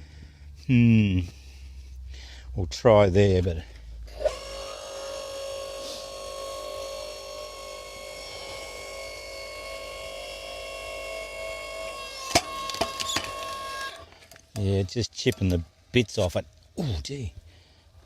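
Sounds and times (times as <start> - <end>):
log splitter running under load: 4.1 - 14.1
wood cracking: 12.2 - 15.6.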